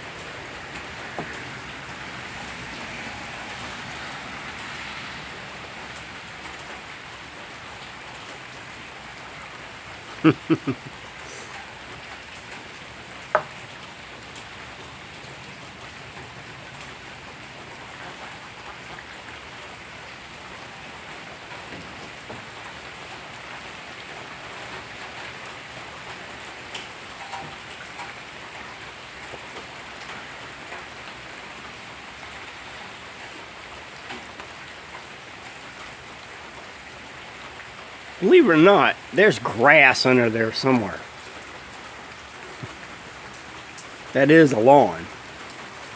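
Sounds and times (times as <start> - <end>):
rain pattering on standing water: 0.0 - 45.9.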